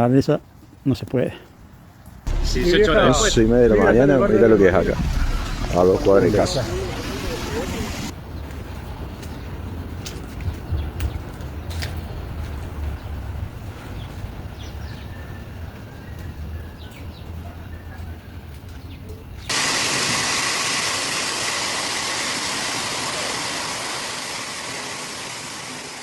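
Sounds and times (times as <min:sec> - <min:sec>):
loud hiss of water: 0:02.3 - 0:08.1, 0:19.5 - 0:26.0
low rumble: 0:02.3 - 0:08.1.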